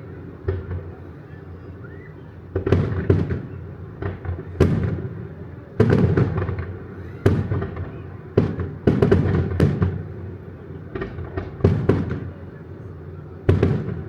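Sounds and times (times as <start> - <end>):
fireworks bursting with echo: 2.5 - 14.0.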